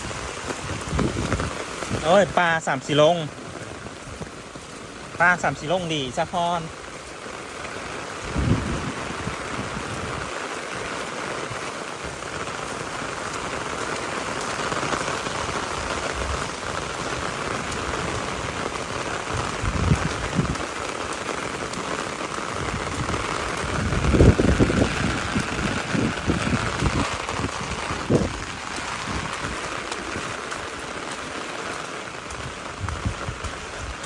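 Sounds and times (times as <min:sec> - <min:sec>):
heavy rain pouring: 0:00.0 - 0:34.0.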